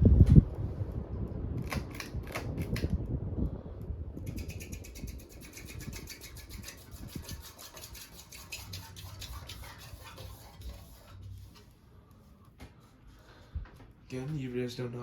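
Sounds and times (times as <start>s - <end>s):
ceiling fan ticking: 0.0s - 7.4s
low fan hum: 0.0s - 15.0s.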